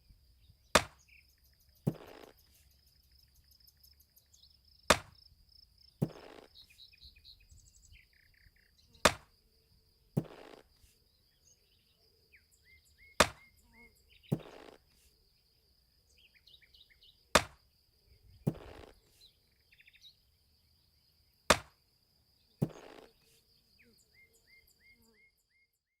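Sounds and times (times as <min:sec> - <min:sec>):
birds chirping: 0:00.0 - 0:09.7, 0:10.7 - 0:17.4, 0:18.0 - 0:21.4, 0:22.4 - 0:25.9
axe chopping wood: 0:00.8 - 0:01.0, 0:01.9 - 0:02.4, 0:04.9 - 0:05.2, 0:06.0 - 0:06.6, 0:09.0 - 0:09.3, 0:10.2 - 0:10.7, 0:13.2 - 0:13.5, 0:14.3 - 0:14.8, 0:17.4 - 0:17.6, 0:18.4 - 0:19.0, 0:21.5 - 0:21.8, 0:22.6 - 0:23.1.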